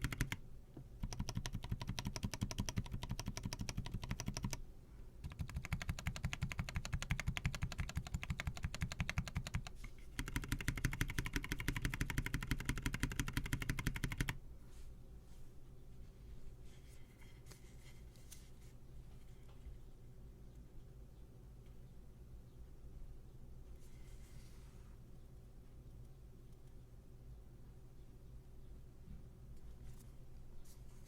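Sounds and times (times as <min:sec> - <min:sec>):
mechanical keyboard typing: 0:00.0 - 0:00.4, 0:01.0 - 0:04.6, 0:05.2 - 0:14.4.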